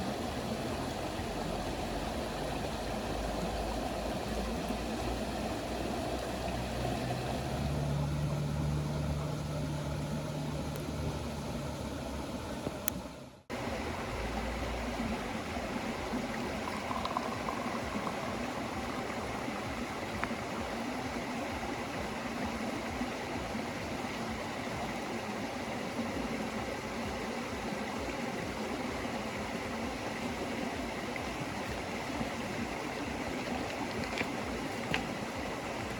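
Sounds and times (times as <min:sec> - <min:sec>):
running bubbling water: 0:13.5 - 0:35.9.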